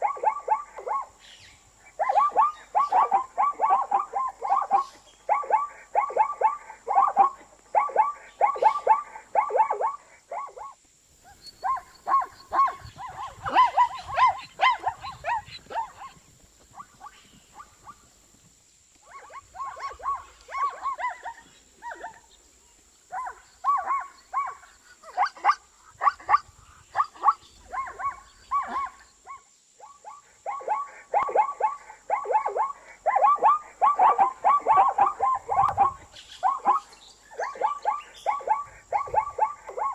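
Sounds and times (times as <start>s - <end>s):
zebra yelping calls: 2.0s - 18.0s, 19.1s - 22.2s, 30.1s - 39.9s.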